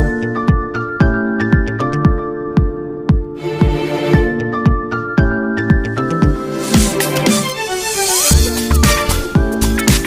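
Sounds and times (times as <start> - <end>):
synth chords: 2.2 - 9.8.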